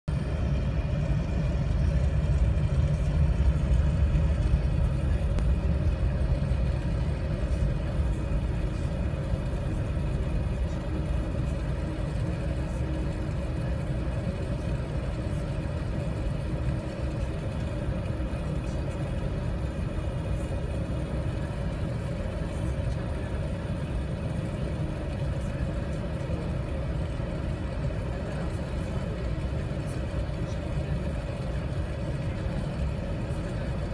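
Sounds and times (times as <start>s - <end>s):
low rumble of engines and airflow: 0.0s - 33.9s
faint steady hum: 0.1s - 33.9s.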